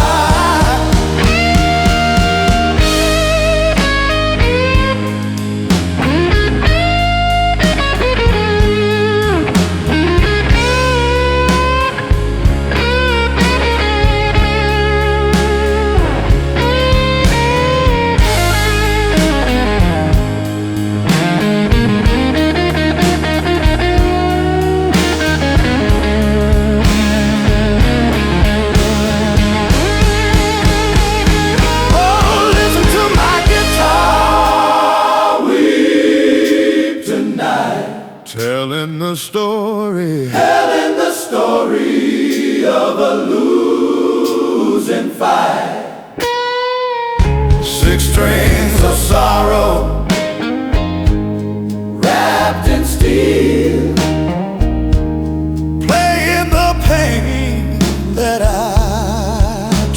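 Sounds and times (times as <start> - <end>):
electric guitar blues solo: 0.0 - 34.6, 46.1 - 53.0, 53.8 - 56.6
bass guitar: 0.0 - 34.8, 46.2 - 59.9
steady drum beat: 0.0 - 37.8, 47.2 - 59.9.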